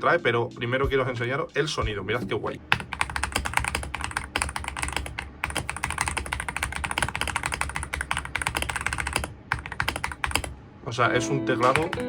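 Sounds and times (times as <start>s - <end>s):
fast mechanical keyboard typing: 2.7s - 10.5s, 11.6s - 12.0s.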